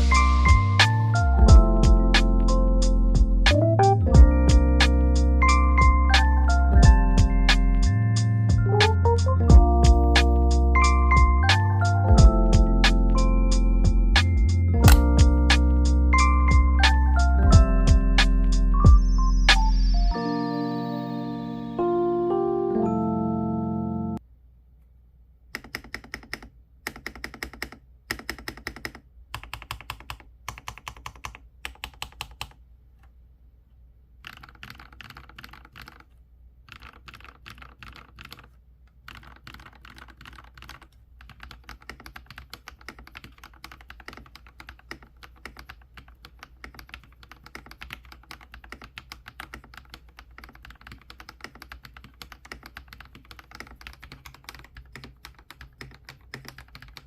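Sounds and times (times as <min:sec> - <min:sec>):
mechanical keyboard typing: 0:14.8 - 0:15.7, 0:25.5 - 0:32.6, 0:34.2 - 0:36.1, 0:36.7 - 0:57.0.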